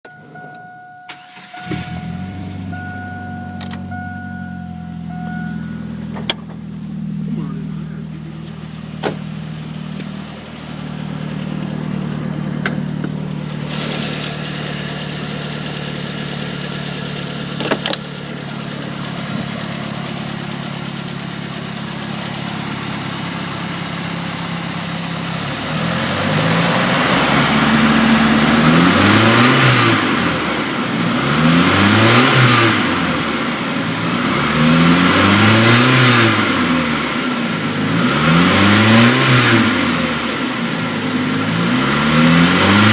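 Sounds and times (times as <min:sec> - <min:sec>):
engine rattle: 0:00.0 - 0:38.1
car engine idling and revving: 0:00.0 - 0:42.9.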